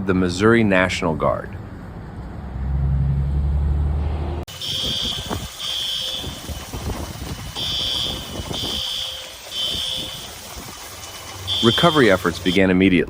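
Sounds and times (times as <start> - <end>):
smoke alarm beeping: 4.5 - 6.8, 7.6 - 10.4, 11.5 - 12.7.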